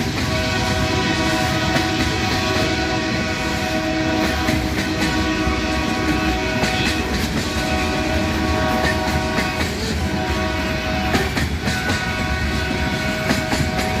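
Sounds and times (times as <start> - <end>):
wheels clicking over rail joints: 3.7 - 14.0.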